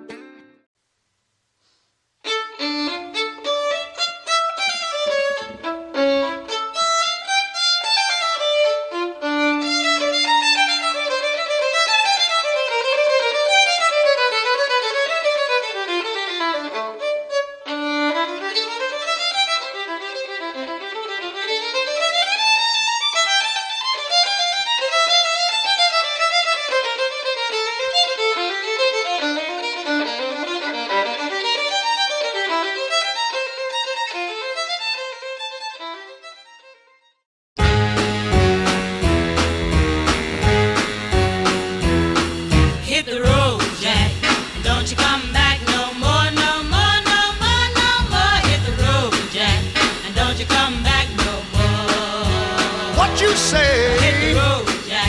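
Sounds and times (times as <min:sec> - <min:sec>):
violin playing fast runs: 0:02.3 - 0:35.9, 0:37.6 - 0:43.1, 0:52.4 - 0:54.6.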